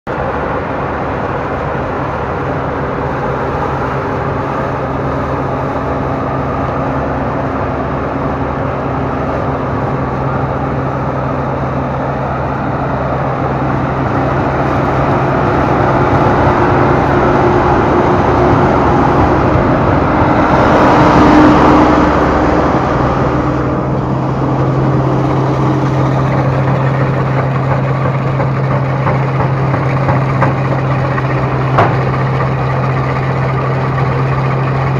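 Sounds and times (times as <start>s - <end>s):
combine harvester engine drone: 0.1s - 34.9s
clatter of machinery: 23.6s - 34.9s.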